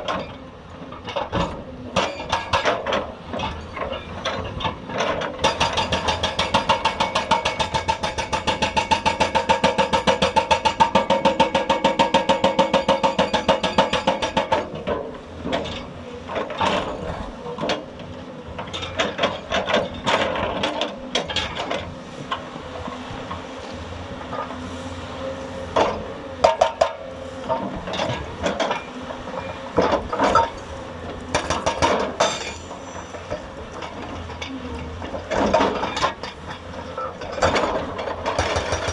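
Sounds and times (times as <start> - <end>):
hydraulic rock breaker hammering: 1.0 - 23.0, 25.7 - 38.9
metal and rock clanks: 25.8 - 30.7, 31.3 - 38.9.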